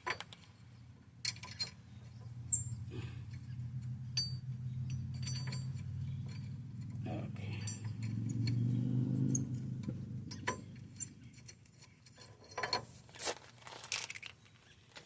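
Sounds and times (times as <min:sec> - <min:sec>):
metallic clicks and clinks: 0:02.5 - 0:12.9.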